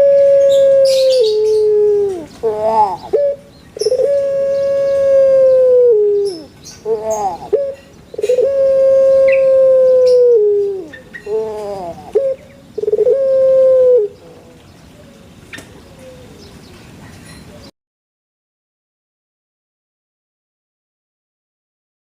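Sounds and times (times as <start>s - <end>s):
dove cooing: 0.0s - 16.5s.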